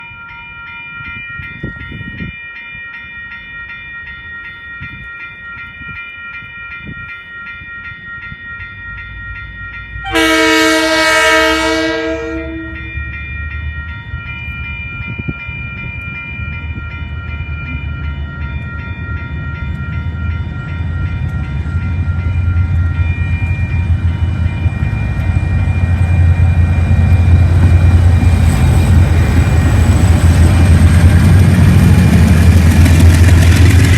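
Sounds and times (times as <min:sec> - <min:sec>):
steady ringing: 0:00.0 - 0:33.9
train horn blast: 0:10.0 - 0:12.9
locomotive engines rumbling: 0:15.6 - 0:33.9.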